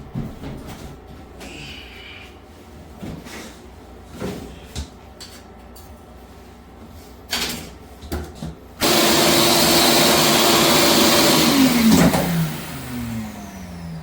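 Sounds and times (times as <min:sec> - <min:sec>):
vacuum cleaner whining: 0:08.8 - 0:14.0.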